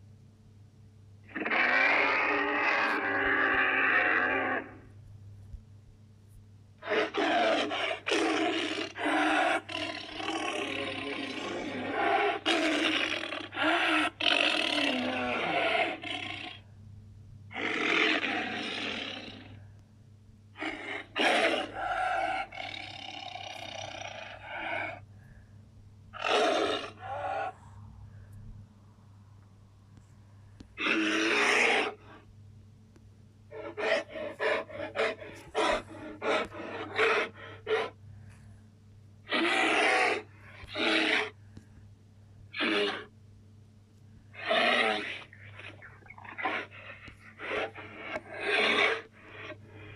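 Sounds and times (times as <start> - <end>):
monster roars and growls: 1.3 - 4.8, 6.8 - 16.6, 30.8 - 32.0, 39.3 - 41.4, 44.4 - 49.6.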